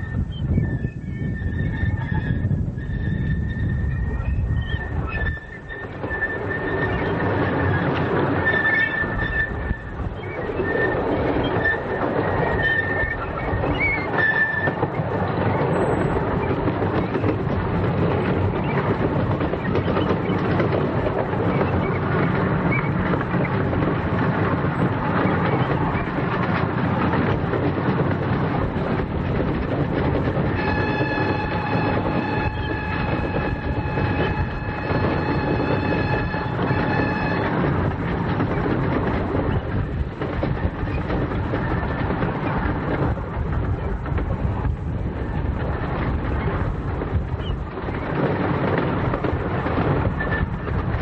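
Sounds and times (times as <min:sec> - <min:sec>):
high wheel squeal: 0:00.0 - 0:17.4, 0:18.0 - 0:23.8, 0:30.2 - 0:38.5, 0:50.2 - 0:50.7
miniature train running on track: 0:00.0 - 0:51.0.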